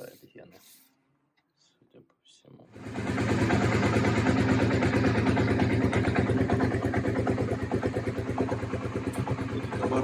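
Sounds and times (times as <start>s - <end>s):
motorcycle engine idling: 2.8s - 10.0s.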